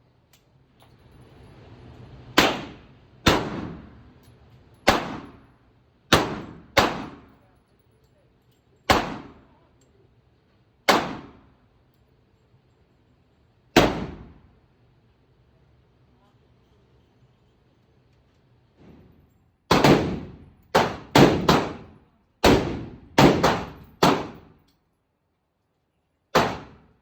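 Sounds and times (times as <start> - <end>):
rifle shots echoing: 2.4 - 3.9, 4.9 - 5.4, 6.1 - 7.3, 8.9 - 9.5, 10.9 - 11.5, 13.8 - 14.4, 19.7 - 24.5, 26.4 - 26.9.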